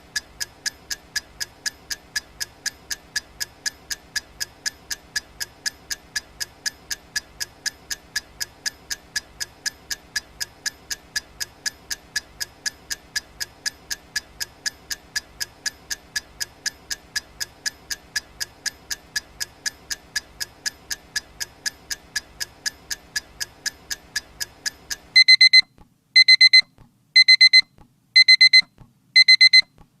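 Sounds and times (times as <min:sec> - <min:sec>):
timer ticking: 0:00.0 - 0:29.8
digital alarm clock beeping: 0:25.2 - 0:29.7.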